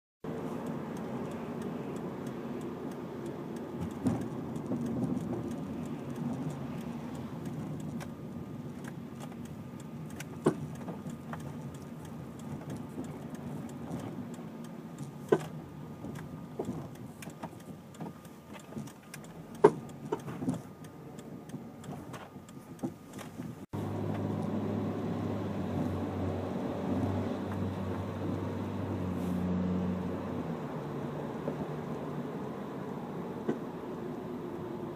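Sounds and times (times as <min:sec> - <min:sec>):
car running noise: 0:00.2 - 0:34.9
suspension knocks and clicks: 0:00.6 - 0:23.7.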